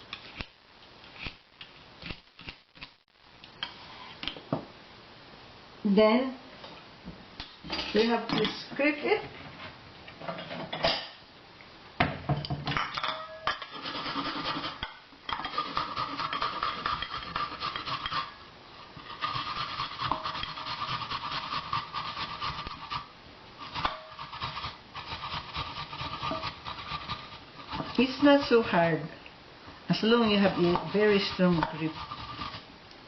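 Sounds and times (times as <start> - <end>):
ginger rasping on a grater: 13.7 - 14.8, 15.4 - 18.3, 19.1 - 28.6, 30.1 - 32.7.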